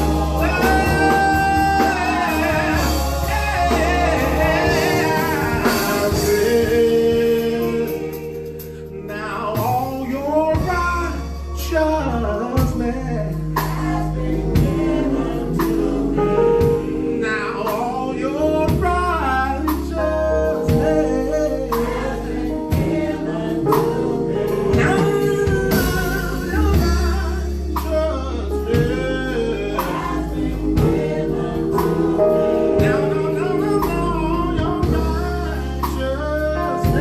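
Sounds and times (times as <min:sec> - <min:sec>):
steady drum beat: 0:00.0 - 0:08.6, 0:12.6 - 0:17.8, 0:21.7 - 0:37.0
bass: 0:00.0 - 0:37.0
gospel singing: 0:00.0 - 0:37.0.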